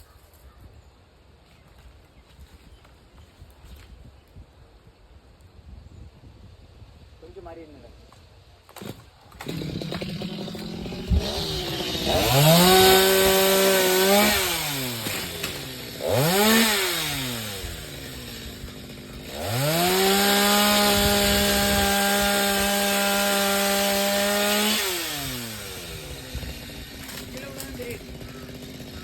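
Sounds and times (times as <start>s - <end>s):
chainsaw idling and revving: 8.7s - 29.0s.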